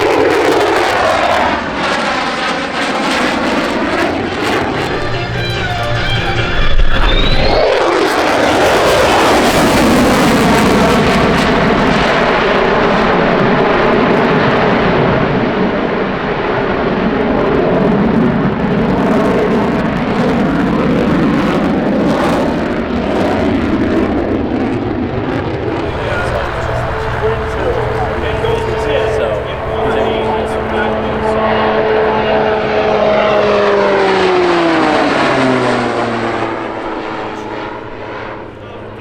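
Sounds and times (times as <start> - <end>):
airplane passing close by: 0.1 - 12.5, 25.8 - 39.0.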